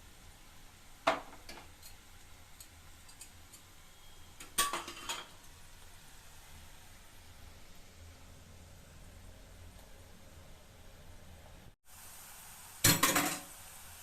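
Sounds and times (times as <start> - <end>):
metal utensil clinking on pan: 4.4 - 5.4.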